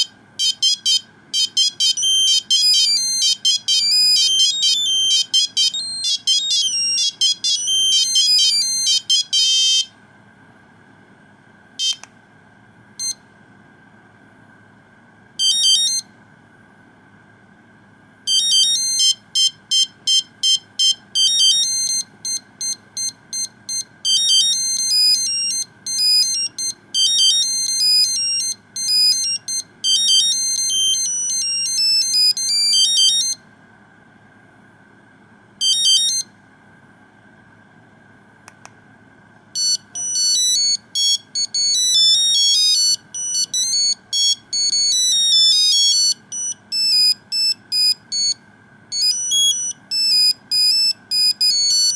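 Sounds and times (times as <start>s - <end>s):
monophonic phone ringtones: 0.0s - 9.9s, 15.4s - 16.0s, 18.3s - 33.4s, 35.6s - 36.3s, 39.6s - 51.9s.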